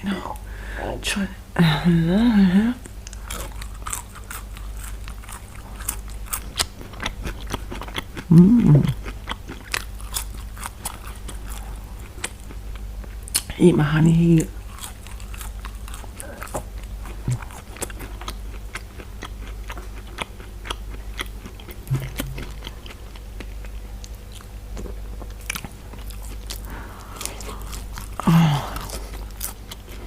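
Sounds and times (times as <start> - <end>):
chewing and crunching food: 2.8 - 30.0
brief mouth or throat sound: 21.9 - 22.4.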